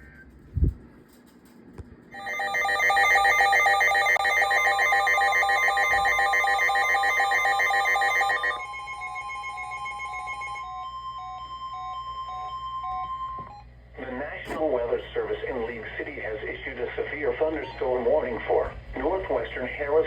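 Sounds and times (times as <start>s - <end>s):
electronic alarm warbling: 2.2s - 13.4s
soft beeping: 2.2s - 13.6s
steady warning tone: 2.2s - 13.7s.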